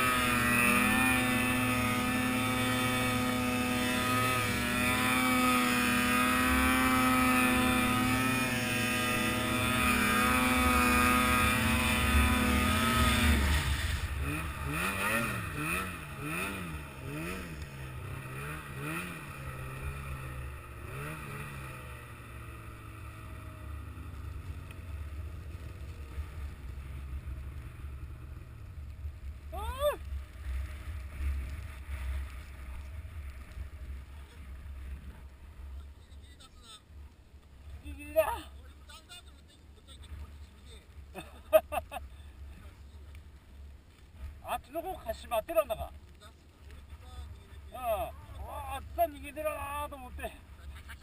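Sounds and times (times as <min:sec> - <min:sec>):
vehicle engine revving: 0:00.0 - 0:36.0.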